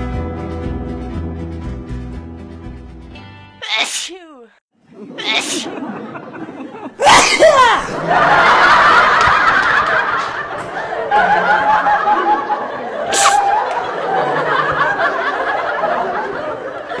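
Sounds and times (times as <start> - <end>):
sneeze: 3.6 - 4.2, 5.2 - 5.7, 7.0 - 8.0, 13.1 - 13.6
laughing and snickering: 4.9 - 17.0
sharp burst of breath: 13.1 - 13.5.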